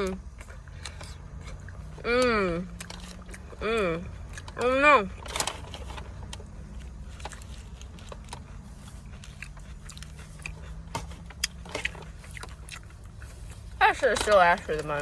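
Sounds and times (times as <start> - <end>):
person chewing and crunching food: 0.0 - 15.0
steady low hum: 0.0 - 15.0.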